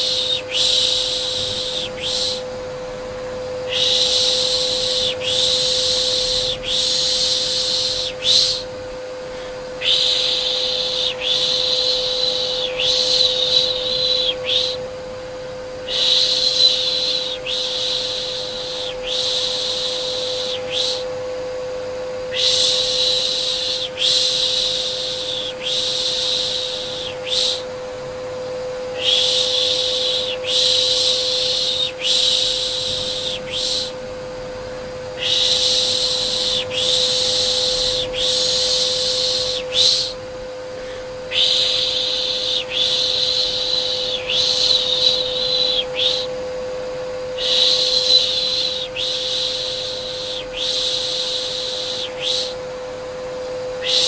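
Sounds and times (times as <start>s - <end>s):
person shushing: 0.0s - 2.4s, 9.4s - 14.8s, 22.3s - 27.7s, 35.2s - 46.3s
vacuum cleaner humming: 0.0s - 54.0s.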